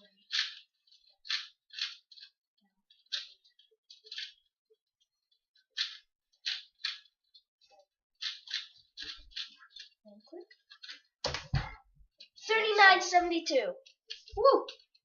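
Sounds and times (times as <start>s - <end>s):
plastic puzzle cube turning clicks: 0.0s - 4.5s, 5.5s - 7.4s, 8.2s - 10.0s.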